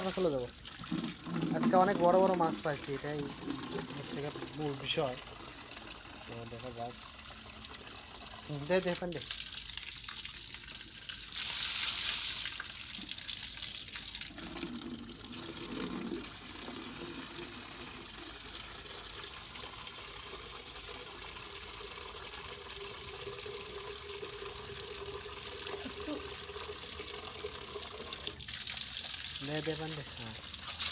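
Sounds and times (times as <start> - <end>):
water splashing and running: 0.0 - 18.5, 28.1 - 30.9
gush of water: 0.0 - 30.9.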